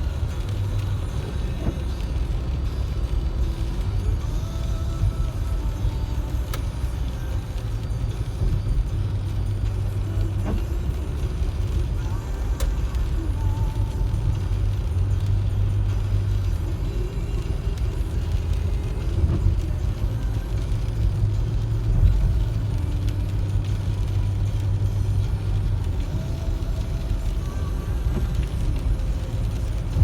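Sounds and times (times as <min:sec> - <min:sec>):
car engine rumbling: 0:00.0 - 0:30.0.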